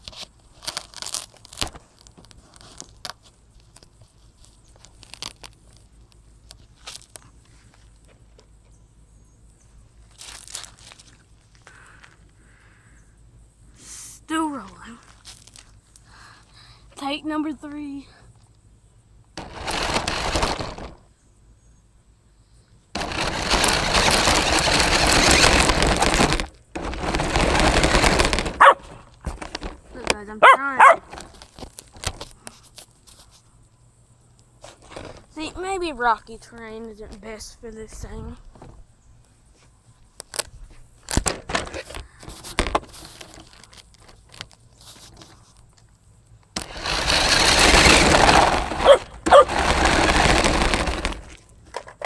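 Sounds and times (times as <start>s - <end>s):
toy buggy driving over rocks: 19.4s - 21.1s, 23.0s - 32.9s, 34.6s - 38.8s, 46.5s - 52.0s.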